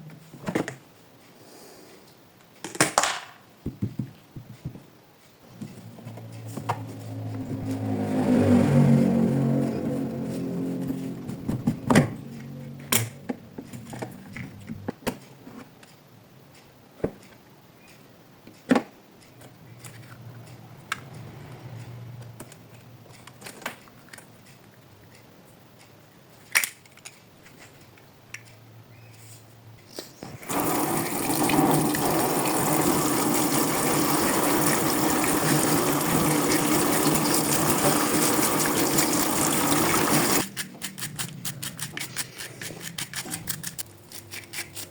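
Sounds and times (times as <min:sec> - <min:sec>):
water rushing in washing machine: 0:30.4 - 0:40.4.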